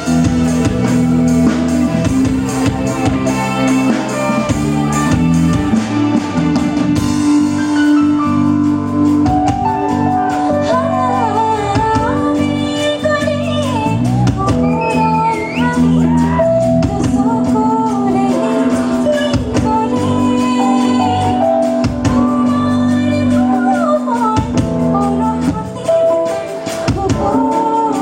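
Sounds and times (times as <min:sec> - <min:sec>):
drums: 0:00.0 - 0:28.0
live band playing: 0:00.0 - 0:28.0
person singing: 0:09.9 - 0:28.0.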